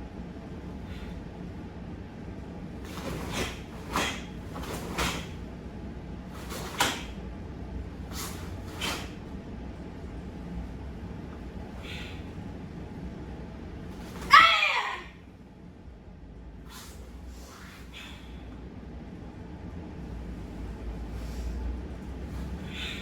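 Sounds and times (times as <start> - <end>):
low room hum: 0.0 - 23.0
uniforms swishing and slapping: 2.7 - 5.6, 6.3 - 7.3, 8.1 - 9.4.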